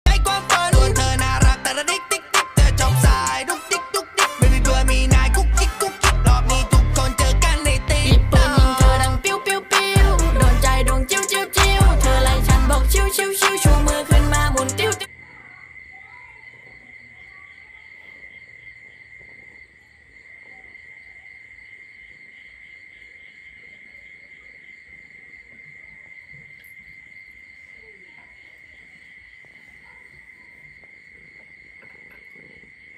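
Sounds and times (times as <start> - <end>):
crickets trilling: 1.5 - 2.6, 3.2 - 6.0, 8.7 - 10.0, 10.7 - 13.7, 15.0 - 32.9.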